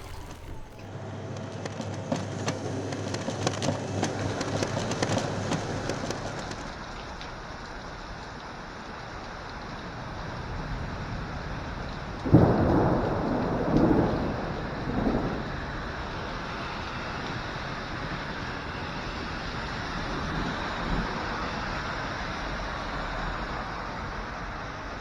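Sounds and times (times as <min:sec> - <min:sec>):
steady rain: 0:00.0 - 0:00.9, 0:03.2 - 0:25.0
thunder clap and rumbles: 0:10.4 - 0:18.7.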